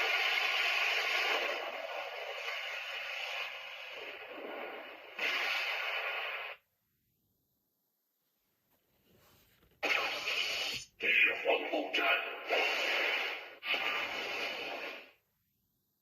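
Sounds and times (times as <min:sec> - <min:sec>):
toy speaker hissing static effect: 0:00.0 - 0:06.6, 0:09.8 - 0:11.1, 0:11.9 - 0:15.2.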